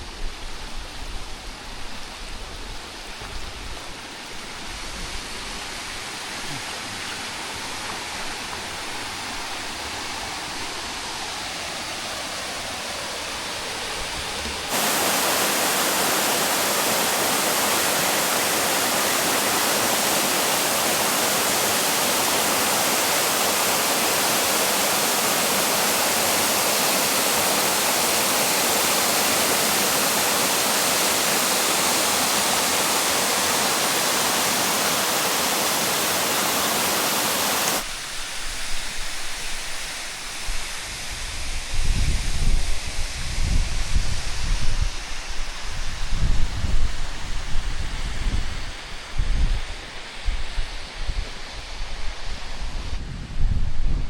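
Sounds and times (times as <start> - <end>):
waterfall rushing: 8.7 - 40.2.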